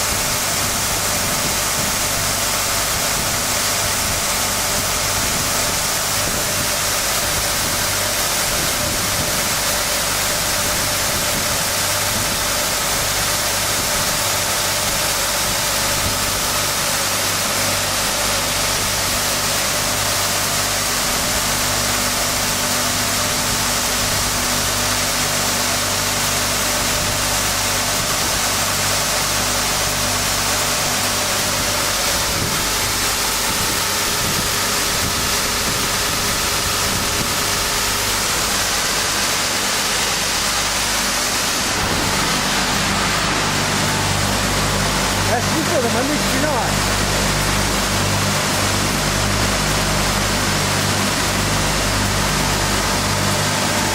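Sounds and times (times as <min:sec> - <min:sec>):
sanding machine hissing and humming: 0:30.3 - 0:47.0.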